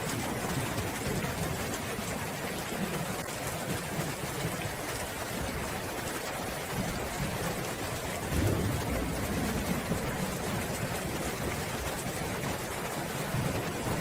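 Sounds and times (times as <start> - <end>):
steady rain hiss: 0.0 - 14.0
distant thunder rumble: 8.2 - 14.0.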